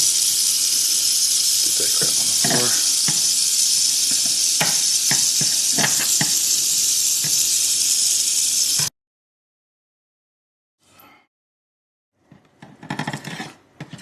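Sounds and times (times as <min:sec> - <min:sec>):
rattlesnake rattling: 0:00.0 - 0:08.9.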